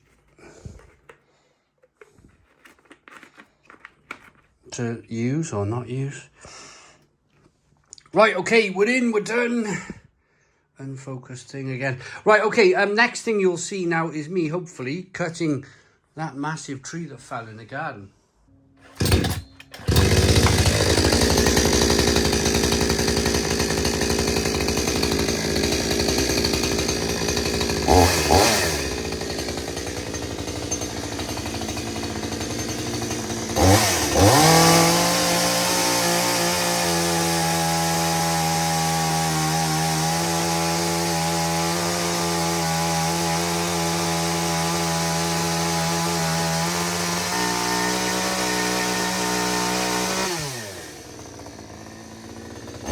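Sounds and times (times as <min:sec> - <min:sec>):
chainsaw engine running: 0:18.8 - 0:52.9.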